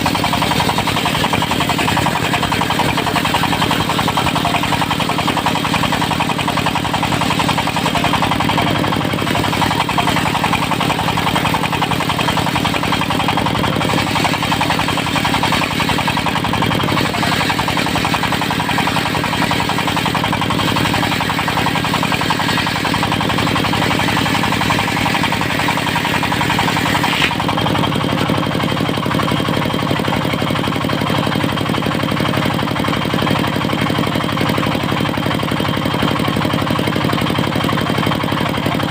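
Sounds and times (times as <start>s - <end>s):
saw blade cutting wood: 0.0s - 28.7s
diesel engine running: 0.0s - 38.9s.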